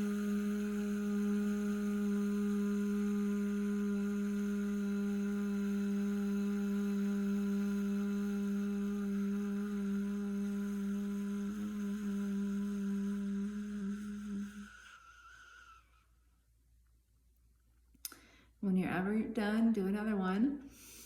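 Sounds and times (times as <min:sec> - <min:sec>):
woman humming buzzing vvv: 0:00.0 - 0:15.8.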